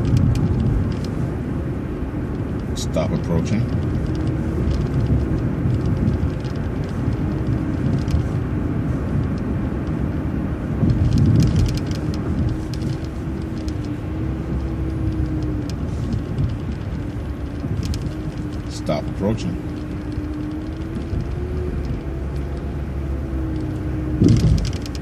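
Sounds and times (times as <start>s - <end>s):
bus engine and road rumble: 0.0s - 25.0s
small rattles: 2.3s - 10.1s, 10.8s - 25.0s.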